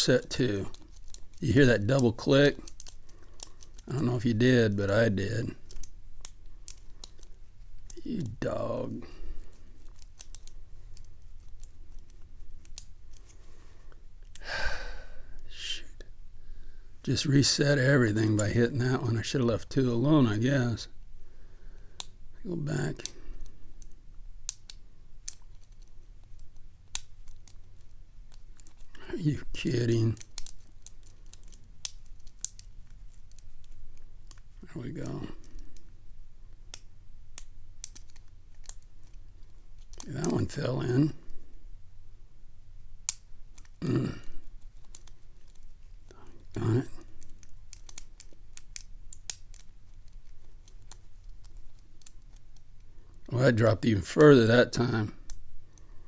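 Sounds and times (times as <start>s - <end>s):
lock pick scratching in keyway: 47.0s - 52.8s.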